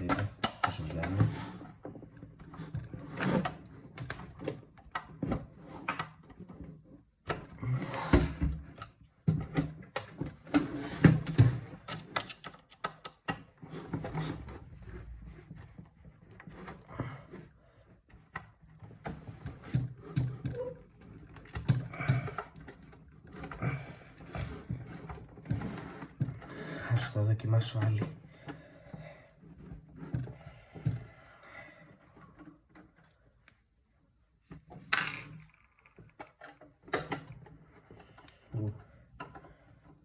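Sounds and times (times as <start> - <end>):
knocks clicks and scraping on metal: 8.6 - 17.5.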